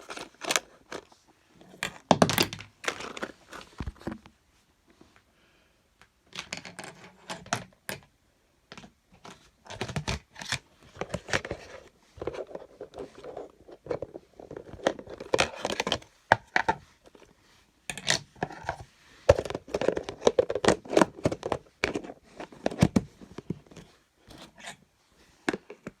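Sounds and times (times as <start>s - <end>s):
plastic toys clicking and rustling: 0.0s - 1.1s, 1.7s - 3.7s, 8.7s - 17.3s, 17.9s - 23.8s.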